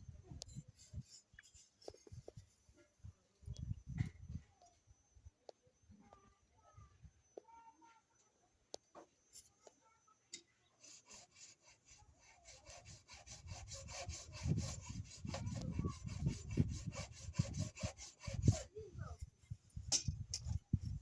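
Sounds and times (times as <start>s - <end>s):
hand saw cutting plastic pipe: 10.8s - 18.8s.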